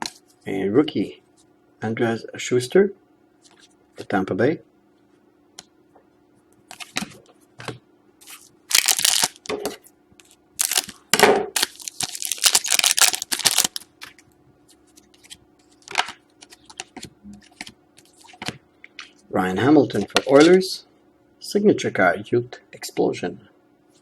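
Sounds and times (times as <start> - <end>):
card pack wrapper tearing: 8.2 - 9.5, 10.6 - 11.0, 11.6 - 14.2.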